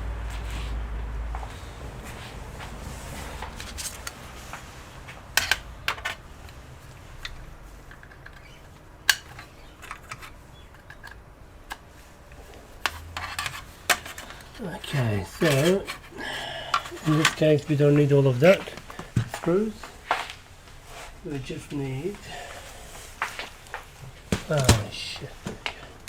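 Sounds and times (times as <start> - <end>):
small parts clicking and tapping: 5.3 - 6.6, 7.2 - 14.6, 15.3 - 17.5.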